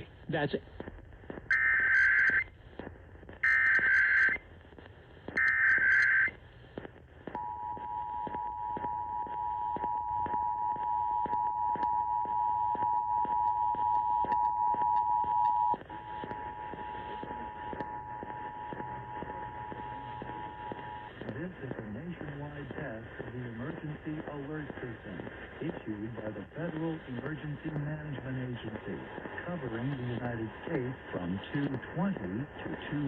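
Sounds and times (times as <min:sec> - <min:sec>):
data tone bursts: 0:01.5 - 0:02.5, 0:03.4 - 0:04.4, 0:05.4 - 0:06.3, 0:07.4 - 0:22.0
steady two-tone attention signal: 0:07.4 - 0:22.0.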